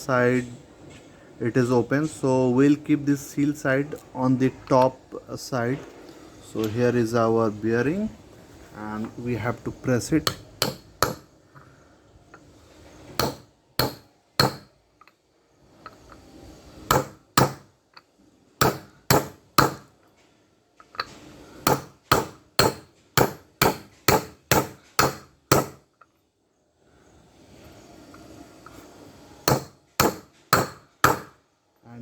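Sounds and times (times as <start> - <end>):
hammer striking metal socket: 10.2 - 11.2.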